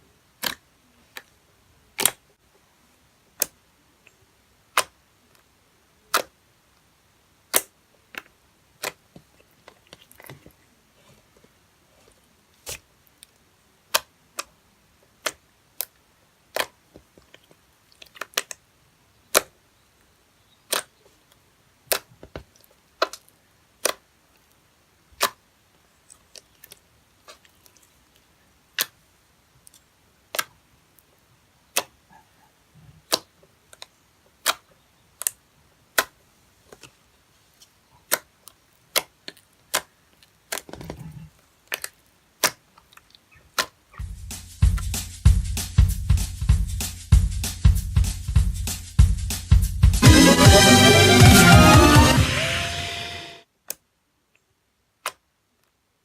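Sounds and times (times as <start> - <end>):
slime squish: 0.4 - 1.3, 7.5 - 14.5, 15.2 - 18.6, 21.8 - 25.4, 26.0 - 29.0, 36.0 - 43.8.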